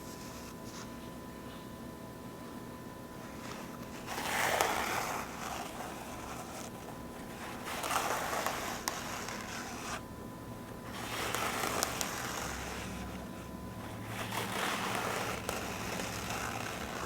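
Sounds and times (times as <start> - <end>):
paper towel tearing: 3.4 - 10.0, 10.9 - 17.0.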